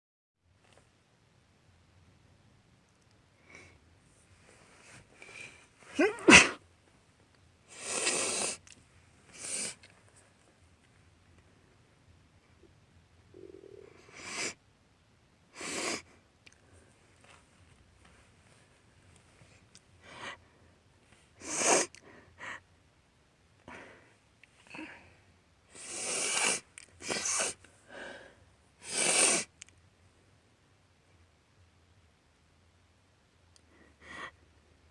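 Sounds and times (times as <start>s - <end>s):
sniffles: 4.7s - 6.6s, 7.7s - 8.7s, 9.3s - 9.9s, 13.7s - 14.6s, 15.5s - 16.2s, 21.4s - 22.6s, 25.7s - 29.6s
woman sneezing: 5.9s - 6.6s
quick in-breaths: 25.8s - 29.5s.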